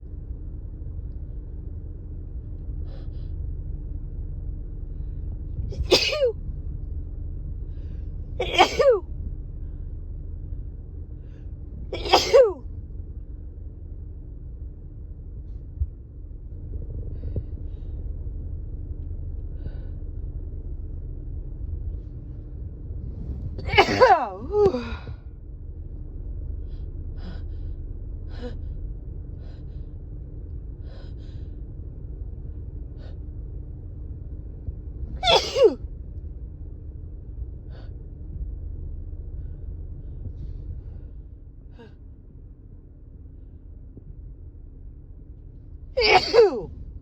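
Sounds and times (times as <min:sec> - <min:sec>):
woman sneezing: 0:05.8 - 0:06.3, 0:08.4 - 0:09.0, 0:12.0 - 0:12.6, 0:23.7 - 0:24.7, 0:35.2 - 0:35.8, 0:46.0 - 0:46.7.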